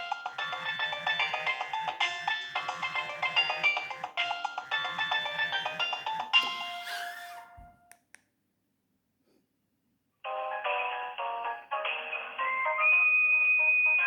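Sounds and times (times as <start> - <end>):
polyphonic phone ringtones: 0.0 - 7.2.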